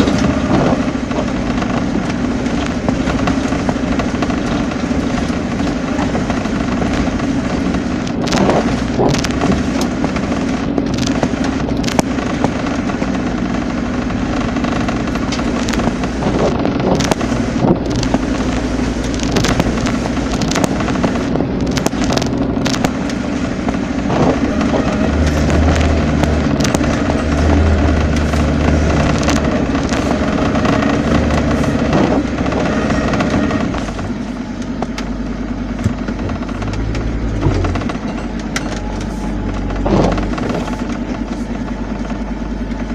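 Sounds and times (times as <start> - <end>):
deep rumble: 0.0 - 42.9
vehicle engine running: 0.0 - 42.9
sharp knocks and clatters: 35.7 - 38.9.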